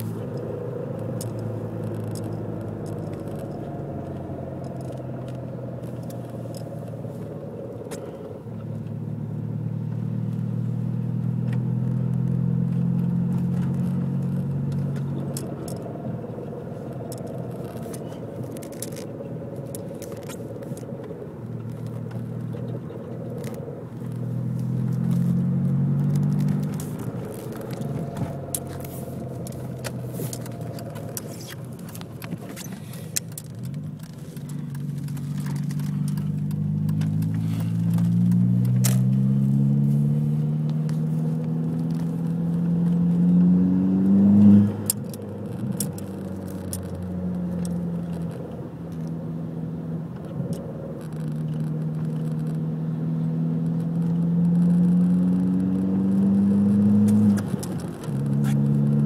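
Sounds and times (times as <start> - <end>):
car engine revving: 0.0 - 59.0
light clicks and ticks: 16.8 - 39.2, 44.8 - 49.2, 50.1 - 52.7.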